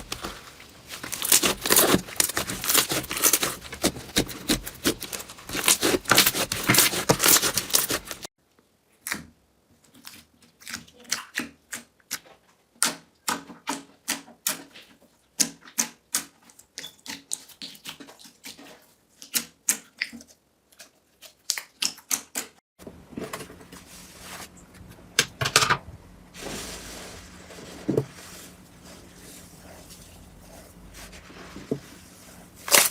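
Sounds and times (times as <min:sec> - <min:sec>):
slime squishing: 0:00.0 - 0:08.3, 0:28.1 - 0:32.9.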